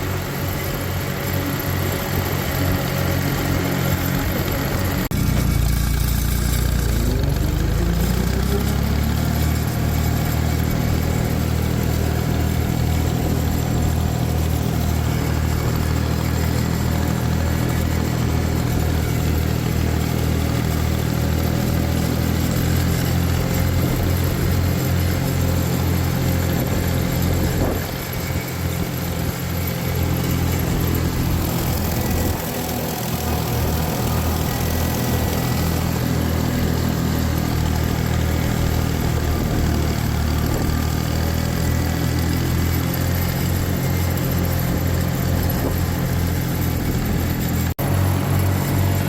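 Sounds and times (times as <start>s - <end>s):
tractor engine under load: 0.0s - 49.0s.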